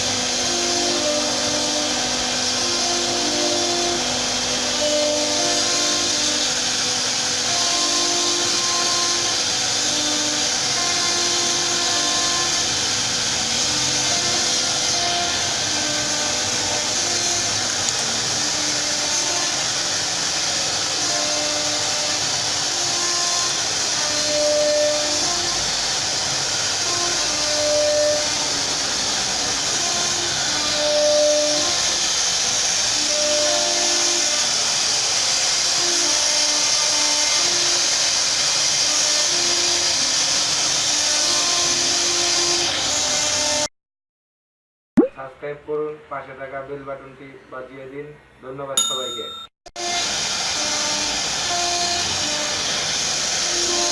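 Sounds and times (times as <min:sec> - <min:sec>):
machine motor hums: 0:00.0 - 0:36.4
router spindle cutting wood: 0:00.0 - 0:43.7, 0:49.8 - 0:53.9.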